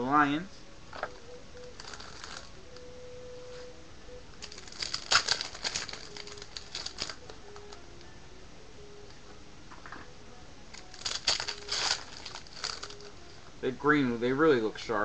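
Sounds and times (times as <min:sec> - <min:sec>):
card packs crinkling and clicking: 0:01.0 - 0:02.9, 0:04.4 - 0:07.8, 0:10.7 - 0:13.3.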